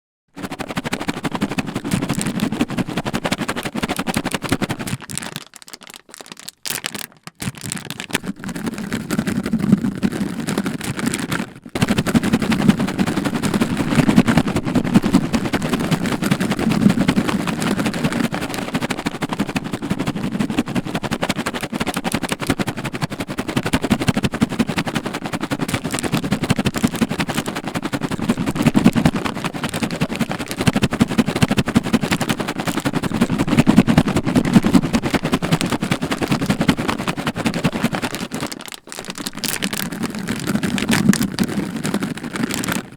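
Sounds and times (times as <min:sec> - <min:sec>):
cat treats rattling in container: 0:00.4 - 0:42.9.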